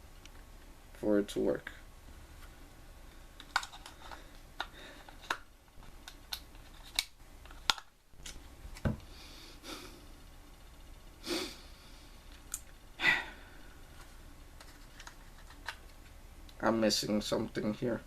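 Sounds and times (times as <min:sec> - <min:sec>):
person sniffing: 0:09.1 - 0:10.0, 0:11.2 - 0:12.1.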